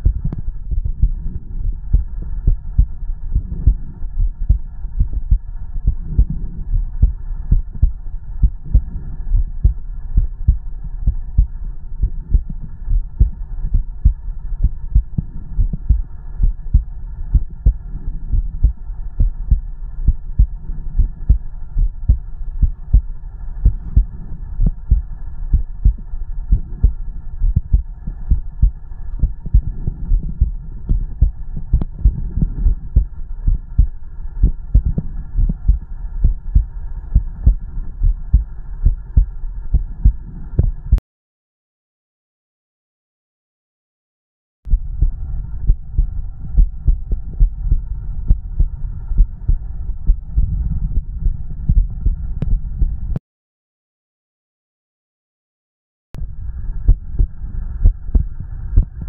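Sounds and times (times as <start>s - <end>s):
heartbeat thumps: 0.0s - 41.0s, 44.7s - 53.2s, 56.9s - 59.0s
stomach rumble: 0.0s - 41.0s, 44.7s - 53.2s, 56.2s - 59.0s.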